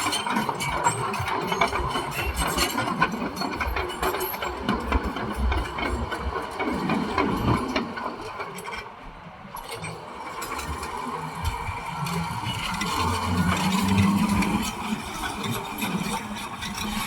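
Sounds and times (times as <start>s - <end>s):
bulldozer diesel engine under load: 10.0s - 17.0s.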